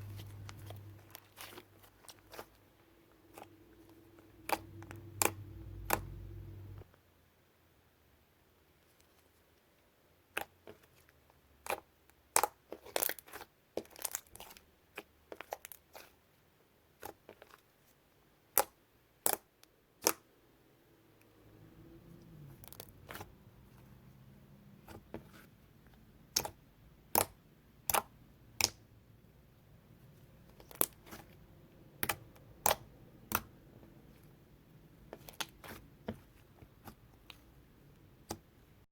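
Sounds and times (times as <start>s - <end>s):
faint low hum: 0.0s - 9.5s.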